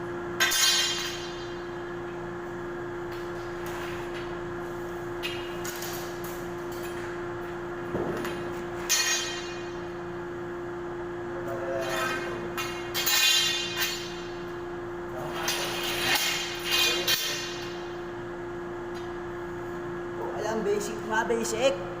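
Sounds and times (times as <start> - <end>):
steady electrical hum: 0.0 - 22.0.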